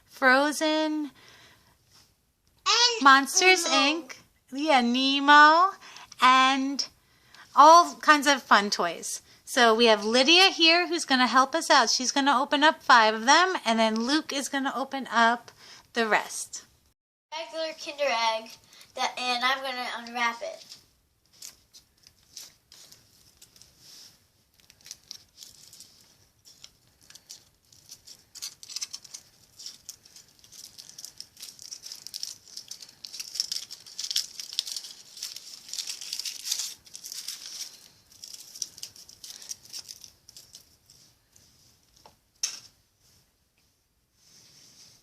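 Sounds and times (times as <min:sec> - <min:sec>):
foil wrapper crinkling: 0:20.6 - 0:42.0.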